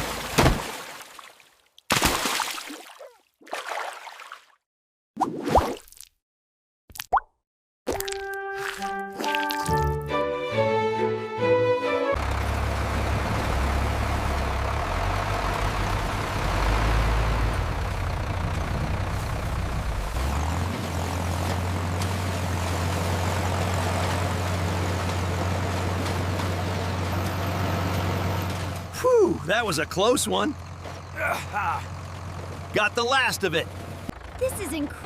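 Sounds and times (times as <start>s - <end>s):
heavy engine low rumble: 11.4s - 35.0s.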